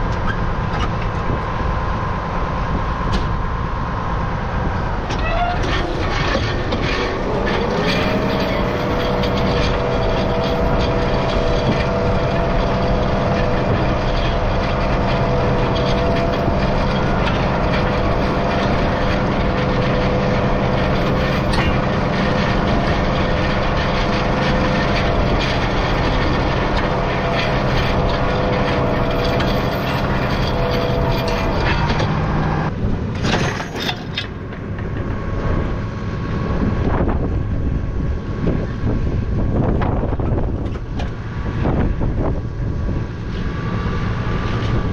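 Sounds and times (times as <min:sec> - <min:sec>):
mechanical whine: 0:00.0 - 0:35.8
tractor engine hum: 0:00.0 - 0:44.9.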